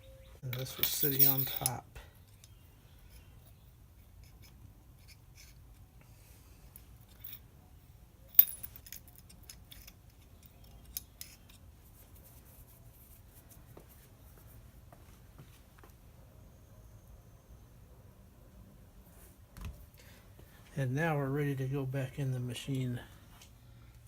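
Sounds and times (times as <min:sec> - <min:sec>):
small metal parts clinking: 0:00.5 - 0:05.6, 0:06.7 - 0:07.5, 0:08.3 - 0:11.6.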